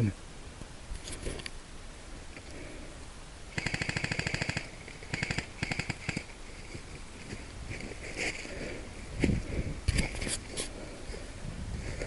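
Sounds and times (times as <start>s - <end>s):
airsoft gun firing bursts: 3.5s - 6.3s.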